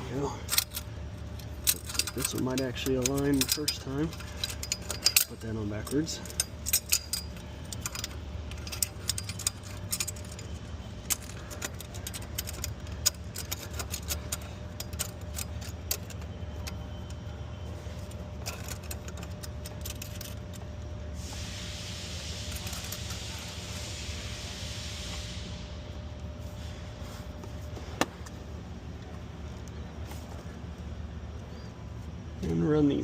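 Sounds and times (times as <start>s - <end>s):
metal parts and tools clinking: 0.0s - 24.3s
steady low hum: 0.0s - 33.0s
steady hiss: 21.2s - 27.0s.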